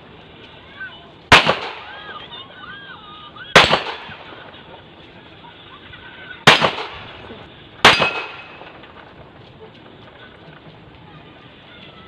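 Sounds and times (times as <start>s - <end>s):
pistol shots with echo: 1.3s - 2.1s, 3.6s - 4.5s, 6.5s - 8.8s.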